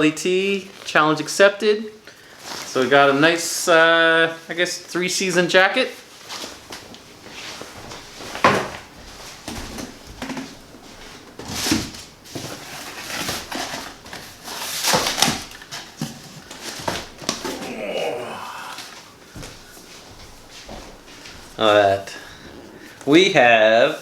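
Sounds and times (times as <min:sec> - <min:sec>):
packaging rustling and crinkling: 0:00.6 - 0:01.0, 0:02.1 - 0:03.0, 0:06.2 - 0:17.7.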